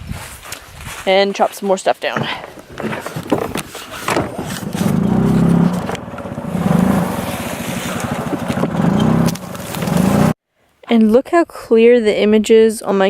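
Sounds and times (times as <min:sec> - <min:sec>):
engine running: 0:02.7 - 0:10.4.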